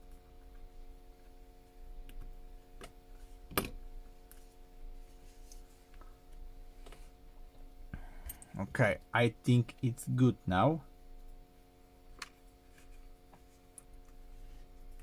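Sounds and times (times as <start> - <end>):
steady electrical hum: 0.0 - 15.0.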